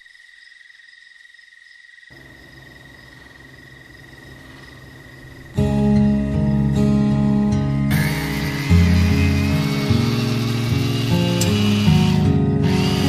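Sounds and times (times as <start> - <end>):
high-pitched insect trill: 0.0 - 6.7
music: 5.4 - 13.0.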